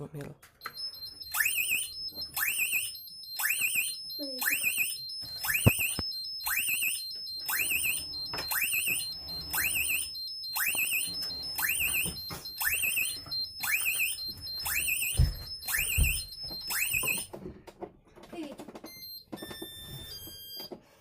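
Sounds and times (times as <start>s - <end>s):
muffled fire alarm whooping warble: 0.6s - 17.3s
steady high alarm tone: 0.6s - 17.4s, 18.8s - 21.0s.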